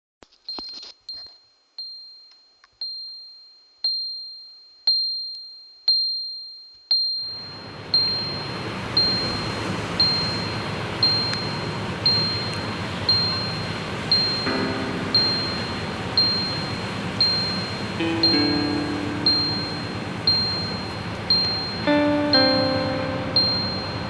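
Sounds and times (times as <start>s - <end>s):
steady hiss: 7.5s - 24.0s
high bell-like ding: 14.3s - 24.0s.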